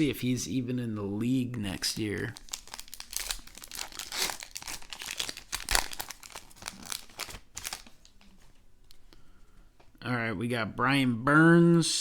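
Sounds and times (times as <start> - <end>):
plastic wrapper crinkling and tearing: 1.8 - 8.4.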